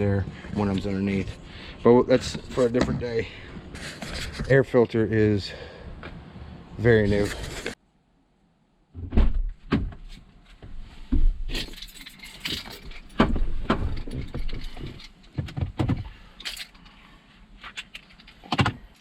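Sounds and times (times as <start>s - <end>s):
tools knocking and rattling: 11.5s - 16.8s.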